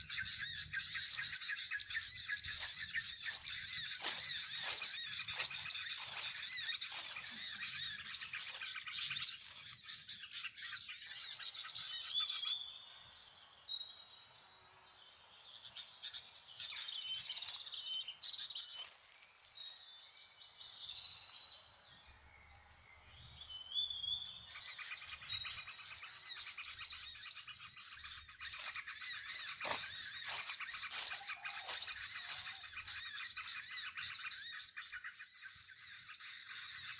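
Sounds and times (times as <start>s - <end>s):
small birds chirping: 0.0s - 36.9s.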